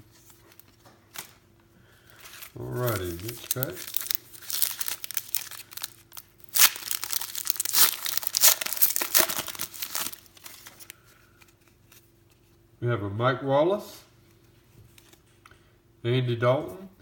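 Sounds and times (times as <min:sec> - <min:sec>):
wrapper tearing and crinkling: 0:02.1 - 0:11.0.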